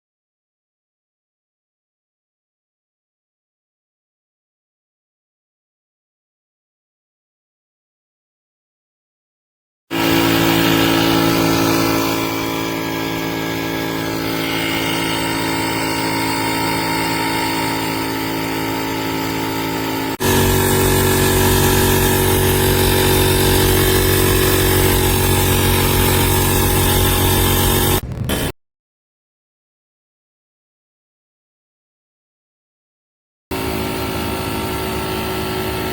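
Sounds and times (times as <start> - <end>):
tire inflator motor hum: 9.9 - 28.5, 33.5 - 35.9.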